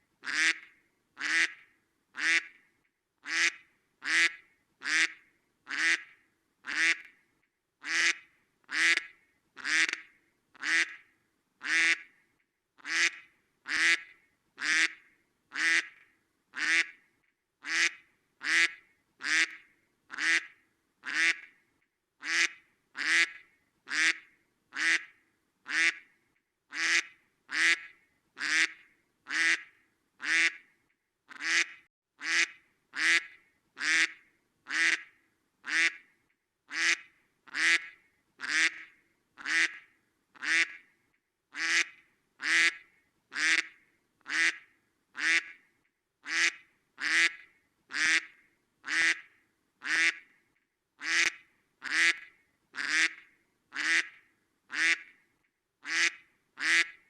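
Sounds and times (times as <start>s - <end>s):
duck quacking: 0.2s - 1.6s, 2.2s - 2.5s, 3.2s - 7.1s, 7.8s - 11.0s, 11.6s - 12.1s, 12.8s - 16.0s, 16.6s - 17.0s, 17.6s - 21.5s, 22.2s - 25.1s, 25.7s - 26.0s, 26.7s - 30.6s, 31.3s - 36.0s, 36.7s - 39.8s, 40.4s - 40.8s, 41.5s - 43.7s, 44.3s - 44.6s, 45.2s - 45.6s, 46.2s - 50.2s, 51.0s - 53.2s, 53.8s - 55.1s, 55.8s - 57.0s.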